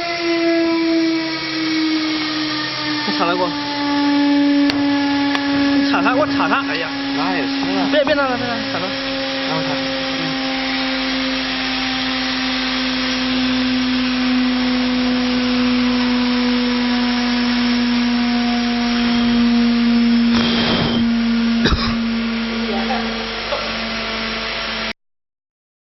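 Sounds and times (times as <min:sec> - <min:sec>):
cnc router spindle whine: 0:00.0 - 0:24.9
hiss of cutting: 0:20.3 - 0:21.2.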